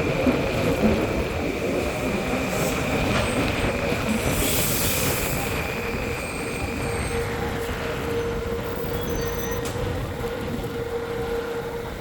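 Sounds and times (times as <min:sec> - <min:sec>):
train rumbling on rails: 0:00.0 - 0:12.0
high-pitched wheel squeal: 0:08.2 - 0:09.7.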